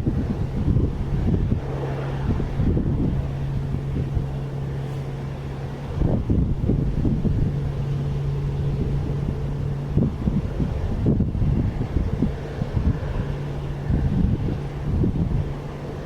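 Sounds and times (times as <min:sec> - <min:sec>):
low engine hum: 0:00.0 - 0:16.0
wind gusting on microphone: 0:00.0 - 0:16.0.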